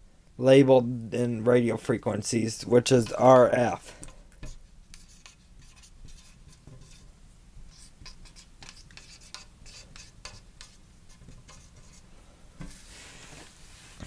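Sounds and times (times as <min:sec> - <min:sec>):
pen scratching on surface: 0:04.4 - 0:07.0, 0:07.7 - 0:12.0.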